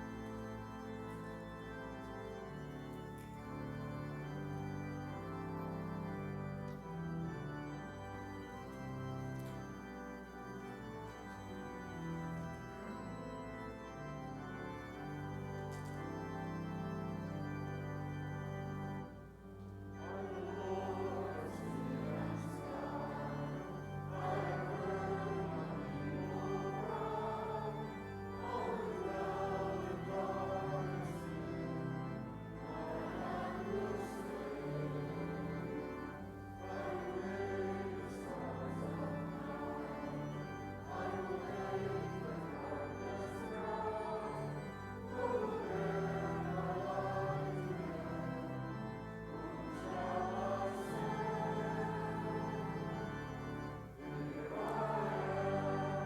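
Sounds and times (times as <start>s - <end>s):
church organ: 0.0s - 56.0s
voices singing a hymn: 0.0s - 56.0s.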